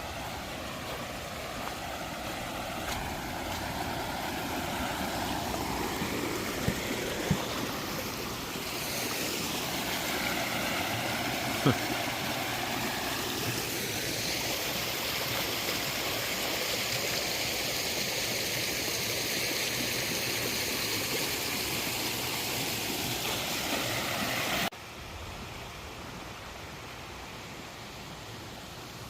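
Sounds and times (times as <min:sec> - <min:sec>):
creek water rushing: 0:00.0 - 0:29.0
steady hiss: 0:00.0 - 0:29.0.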